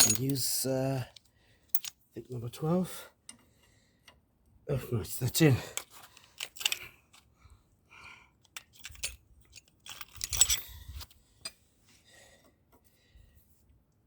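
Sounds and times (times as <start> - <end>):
metal hand tools clinking: 0.0 - 0.6, 8.6 - 10.7.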